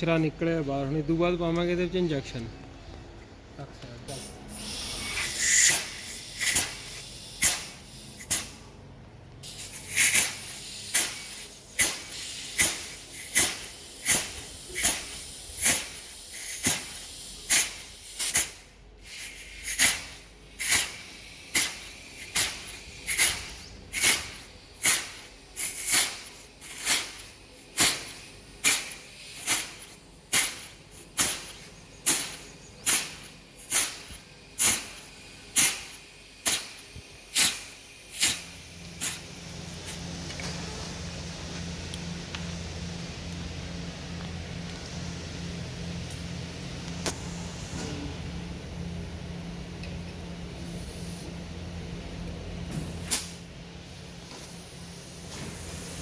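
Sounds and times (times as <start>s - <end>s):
pressurised air hisses: 4.1s - 8.7s, 9.4s - 40.2s, 52.7s - 56.0s.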